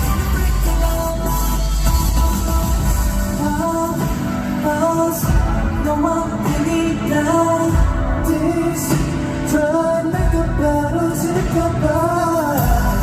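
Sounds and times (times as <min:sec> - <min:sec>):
pop dance track with singing: 0:00.0 - 0:13.0.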